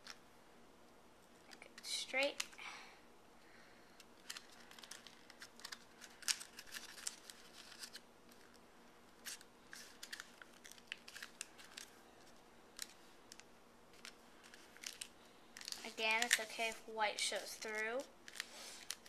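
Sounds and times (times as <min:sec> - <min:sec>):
paper crinkling while folded: 0:04.2 - 0:19.0.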